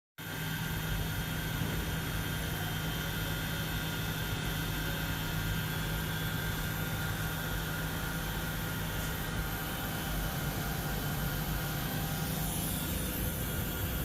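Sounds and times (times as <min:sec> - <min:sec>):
electrical equipment hum and hiss: 0:00.2 - 0:14.0
high-pitched whines: 0:08.7 - 0:14.0.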